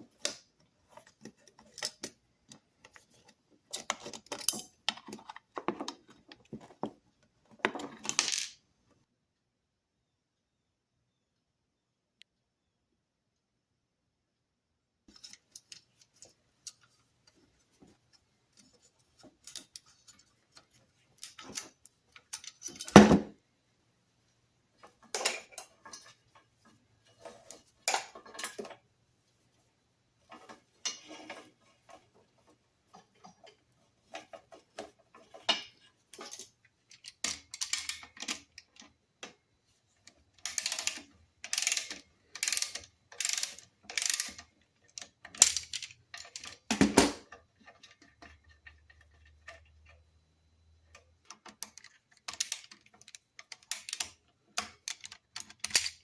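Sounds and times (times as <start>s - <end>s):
metal tools clicking and clinking: 3.7s - 5.9s, 19.4s - 23.3s, 32.9s - 39.0s, 40.4s - 50.0s, 51.3s - 56.0s.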